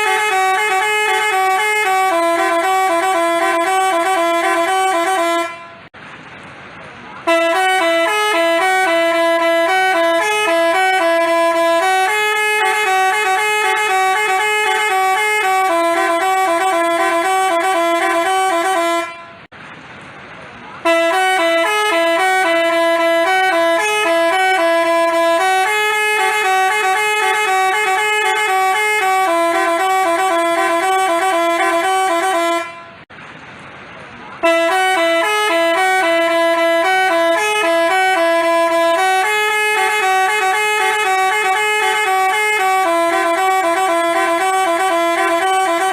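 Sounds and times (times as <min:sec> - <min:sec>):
musical bus horn playing a tune: 0:00.0 - 0:06.0, 0:07.2 - 0:19.5, 0:20.8 - 0:33.1, 0:34.4 - 0:45.9.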